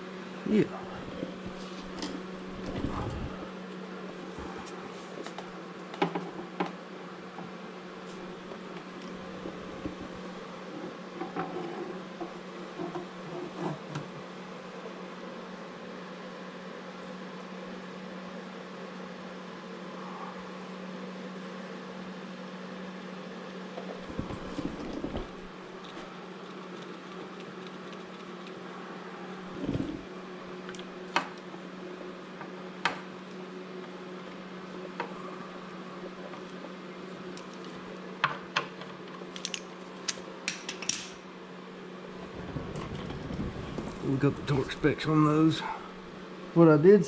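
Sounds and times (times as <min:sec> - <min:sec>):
shop background hum: 0:00.0 - 0:47.0
tools clicking and knocking: 0:39.3 - 0:41.2.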